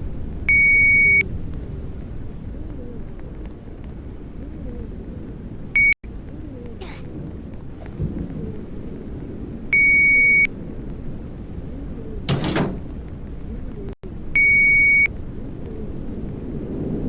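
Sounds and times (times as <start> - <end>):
loud electronic beeps: 0.5 - 1.2, 5.8 - 6.0, 9.8 - 10.5, 14.4 - 15.1.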